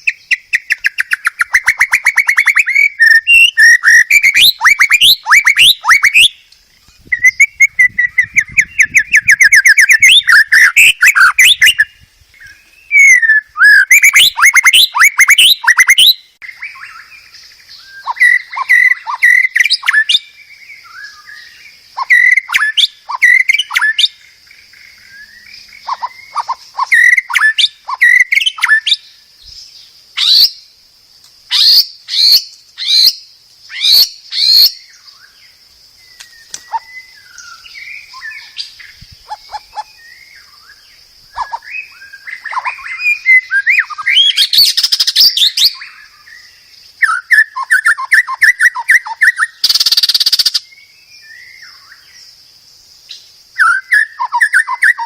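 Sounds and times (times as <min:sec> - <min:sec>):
bird singing trills and whistles: 0:00.0 - 0:30.8, 0:31.5 - 0:52.4, 0:53.0 - 0:55.0
faint high hiss: 0:16.2 - 0:47.1.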